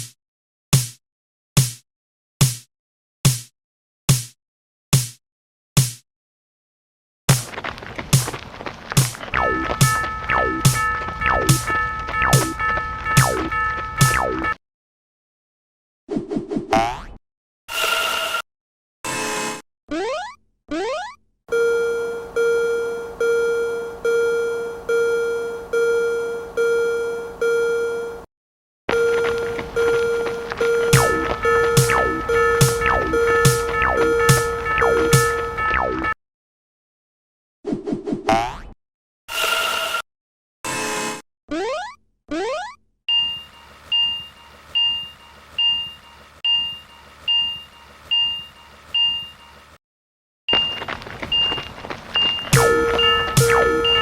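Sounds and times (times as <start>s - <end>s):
railroad crossing bell ringing: 9.4s - 14.1s, 28.9s - 35.7s, 43.1s - 49.7s, 50.5s - 54.0s.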